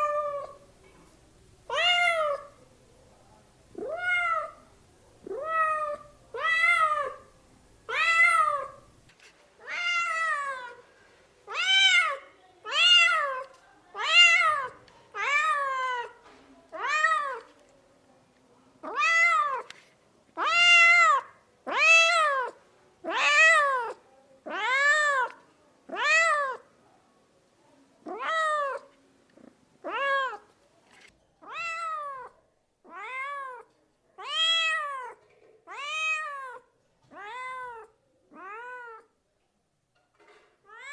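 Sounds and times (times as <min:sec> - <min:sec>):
cat meowing: 0:00.0 - 0:00.6, 0:01.7 - 0:02.6, 0:03.7 - 0:07.3, 0:07.9 - 0:09.0, 0:31.4 - 0:32.3, 0:32.9 - 0:33.6, 0:34.2 - 0:39.1, 0:40.7 - 0:40.9.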